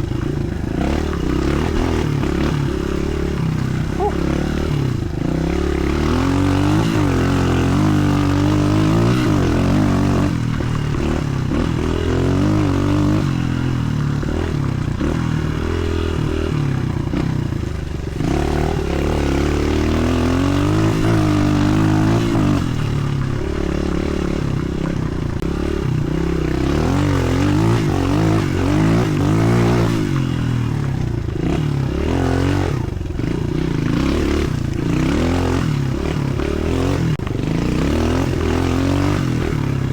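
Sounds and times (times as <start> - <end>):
motorbike engine revving: 0.0 - 39.9.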